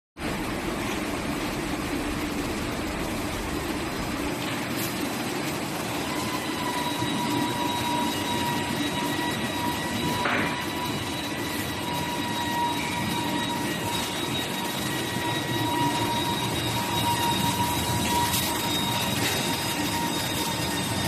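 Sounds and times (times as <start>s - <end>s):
steady whine: 0.2s - 21.0s.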